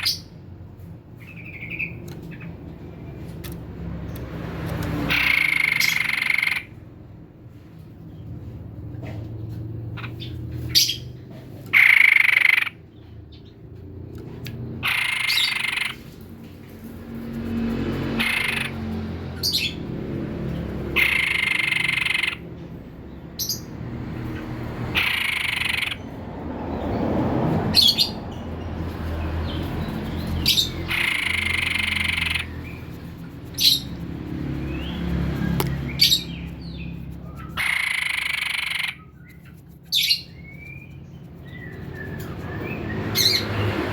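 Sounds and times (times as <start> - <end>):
bird harsh buzzy calls: 5.0 - 6.8, 14.8 - 16.3, 17.3 - 19.8, 20.6 - 22.4, 24.9 - 26.2, 28.9 - 40.9.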